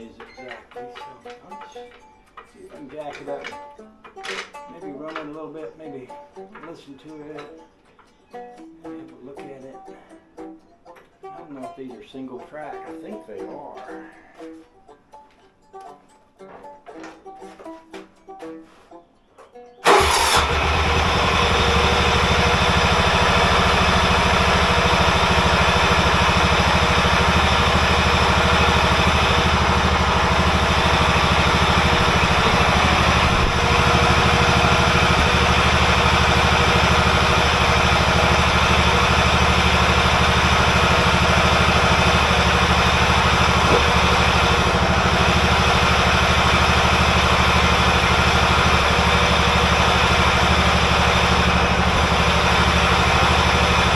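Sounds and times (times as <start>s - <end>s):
engine idling: 19.8s - 53.9s.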